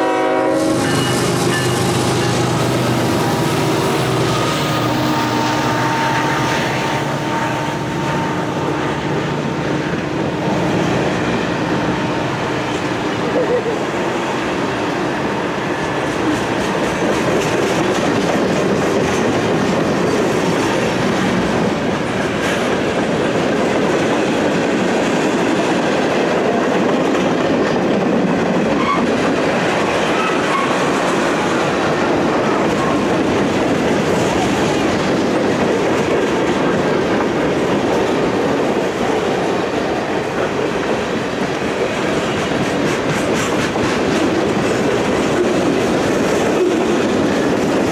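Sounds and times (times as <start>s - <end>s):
freight train wheels rumbling: 0.0s - 47.9s
wheels clickety-clack over joints: 15.8s - 47.9s.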